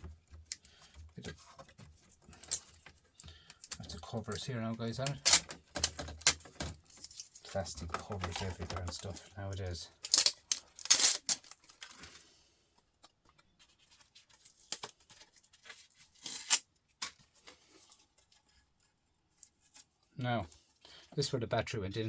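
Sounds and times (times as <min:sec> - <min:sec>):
laptop parts clicking: 0:00.0 - 0:09.2
plastic laptop parts ripping: 0:00.0 - 0:12.2, 0:13.6 - 0:17.6.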